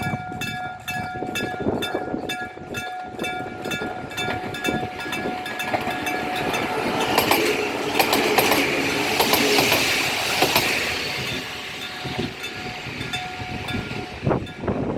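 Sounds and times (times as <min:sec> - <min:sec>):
level crossing bell ringing: 0:00.0 - 0:07.2
train wheel clatter: 0:00.0 - 0:14.9.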